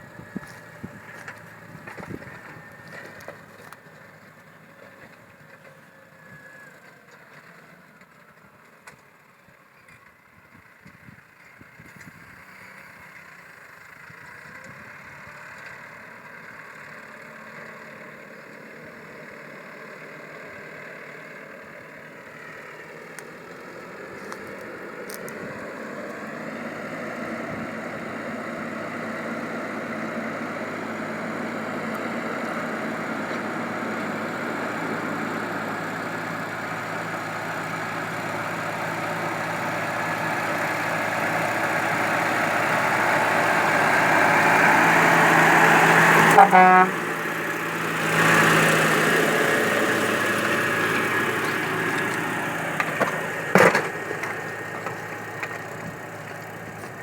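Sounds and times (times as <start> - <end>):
tractor diesel engine running: 0.0 - 57.0.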